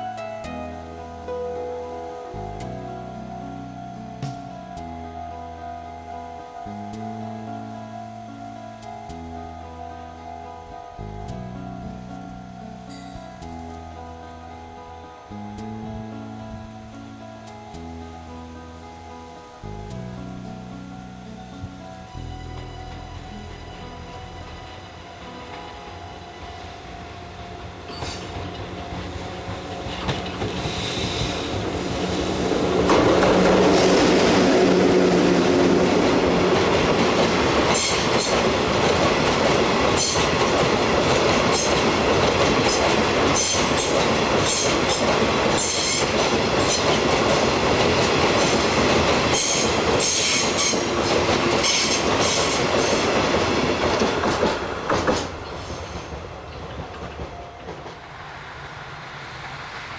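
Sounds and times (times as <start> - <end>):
locomotive passing: 20.4 - 59.9
wheels clacking over rail joints: 24.4 - 58.2.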